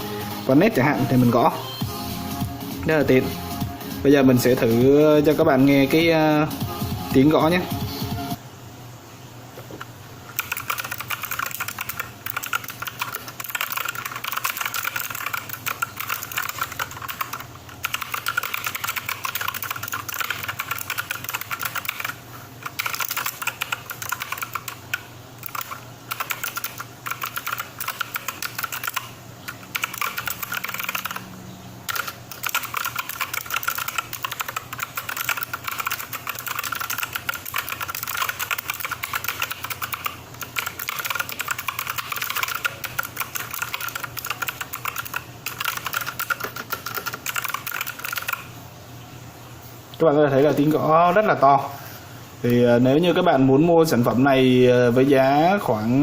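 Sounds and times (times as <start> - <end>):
typing on mechanical keyboard: 10.3 - 31.3, 31.9 - 48.5.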